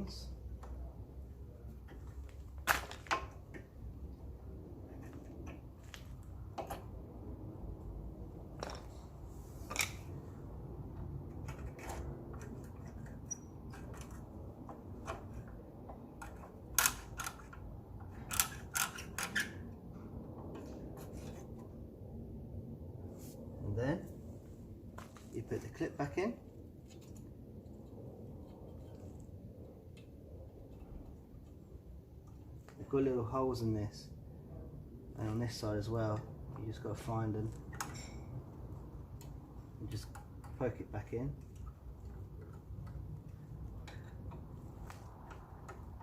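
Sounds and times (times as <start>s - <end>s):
low steady hum: 0.0s - 46.0s
metal clicks of hand tools: 16.2s - 19.5s.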